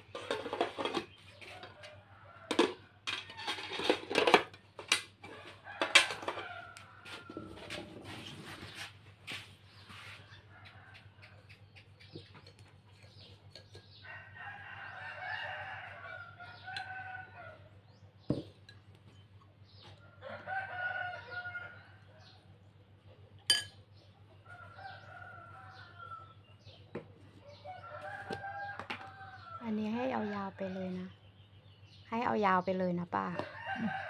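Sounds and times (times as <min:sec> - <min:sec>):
rooster crowing: 0:05.2 - 0:08.0, 0:14.0 - 0:17.7, 0:20.0 - 0:22.4, 0:24.4 - 0:26.4, 0:27.4 - 0:31.1, 0:33.2 - 0:34.0.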